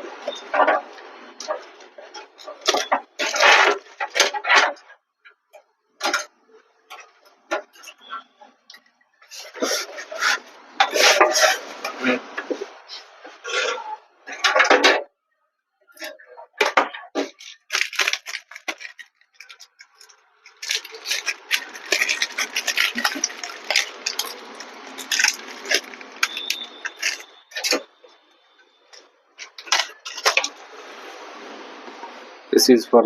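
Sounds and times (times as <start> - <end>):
hands clicking and rattling parts: 15.9 - 27.9, 28.9 - 30.6.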